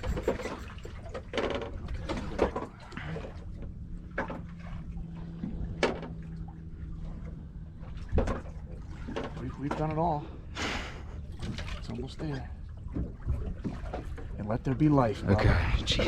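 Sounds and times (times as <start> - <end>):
fishing gear clicks and knocks: 0.0 - 2.8
boat engine rumble: 0.0 - 16.0
low steady hum: 0.0 - 16.0.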